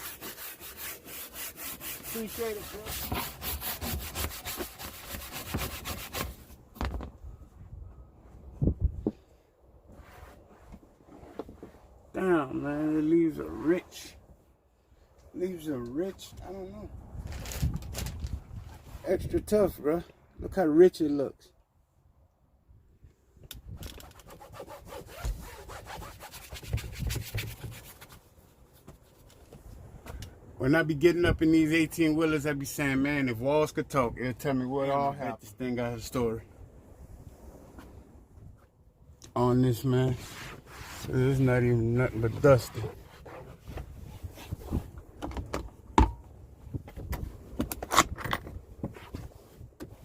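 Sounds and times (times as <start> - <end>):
brush scrubbing a surface: 0.0 - 6.4.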